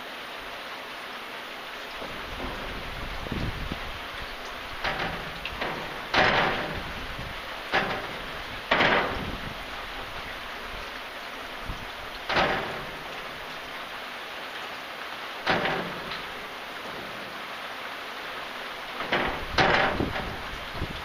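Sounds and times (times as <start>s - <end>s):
steady rain falling: 0.0s - 21.0s
sudden splashes or knocks: 2.0s - 10.3s, 11.6s - 13.8s, 15.4s - 17.4s, 18.9s - 20.9s.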